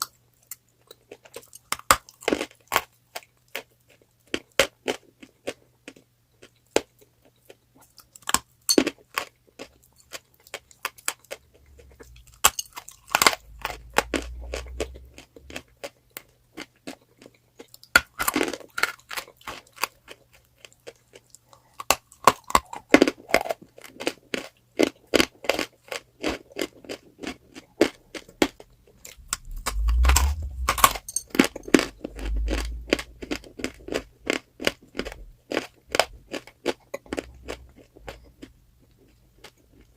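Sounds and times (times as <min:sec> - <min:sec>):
chalk crunching when chewed: 0:00.4 - 0:39.9
low thuds: 0:29.0 - 0:34.3.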